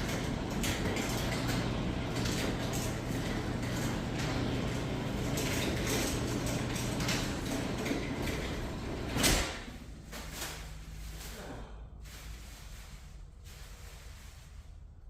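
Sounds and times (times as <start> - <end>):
large door rattling shut: 0.0 - 9.7.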